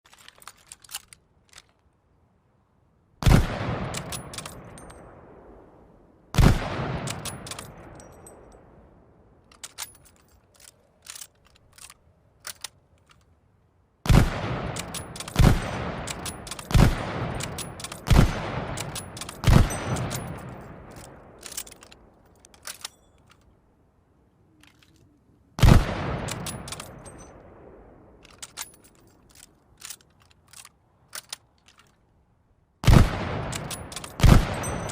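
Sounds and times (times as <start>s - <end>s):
rifle bolt clicks: 0.1s - 2.0s, 3.9s - 5.0s, 7.0s - 8.6s, 9.4s - 13.4s, 14.7s - 23.6s, 24.6s - 27.5s, 28.2s - 32.1s, 33.4s - 34.9s
rifle shots echoing: 3.2s - 5.7s, 6.3s - 8.6s, 14.0s - 22.0s, 25.6s - 28.2s, 32.8s - 34.9s.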